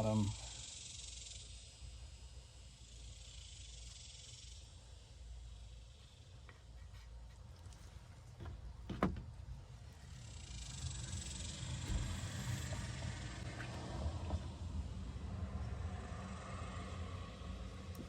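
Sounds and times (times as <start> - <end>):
faint low rumble with hiss: 0.0 - 18.0
light clicks and knocks: 6.5 - 9.4.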